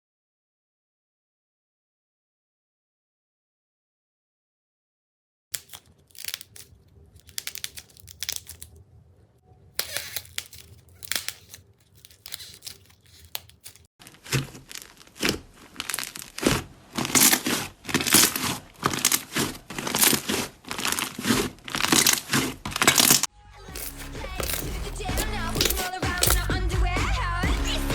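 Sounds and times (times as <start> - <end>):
slime crackling and squishing: 5.6 - 9.0, 9.7 - 27.9.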